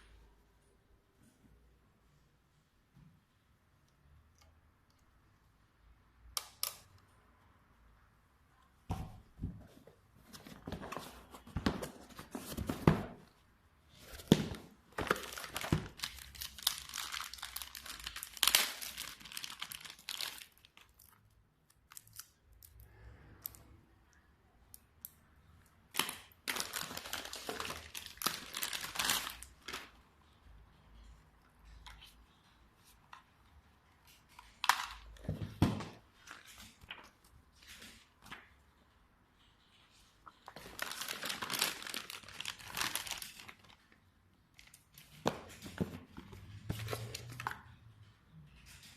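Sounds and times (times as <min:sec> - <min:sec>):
packaging crinkling and rustling: 0:13.9 - 0:21.2, 0:25.9 - 0:30.0, 0:40.4 - 0:44.0.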